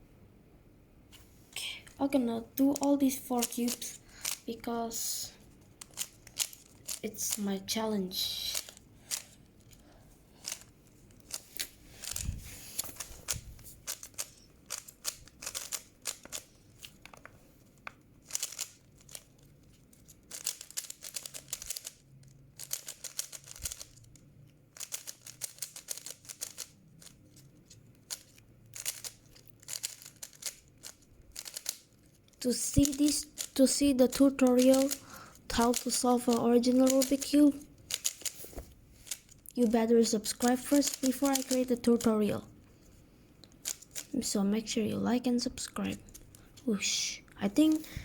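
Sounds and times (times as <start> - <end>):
puzzle cube clicking: 2.6 - 4.6, 5.7 - 7.5, 8.5 - 9.8, 10.4 - 38.4, 39.0 - 42.3, 43.5 - 44.2.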